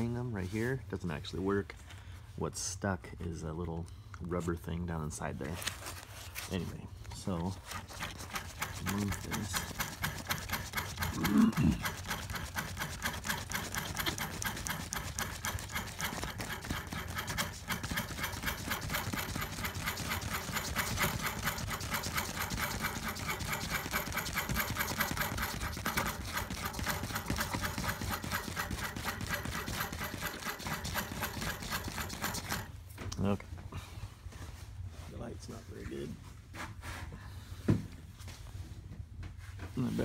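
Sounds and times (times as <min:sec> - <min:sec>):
machine clattering: 0:07.8 - 0:32.7.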